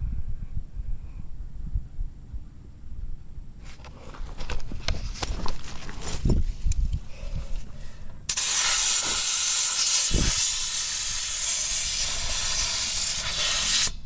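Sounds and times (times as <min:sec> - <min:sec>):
compressed air hissing from hose: 0:08.3 - 0:14.0.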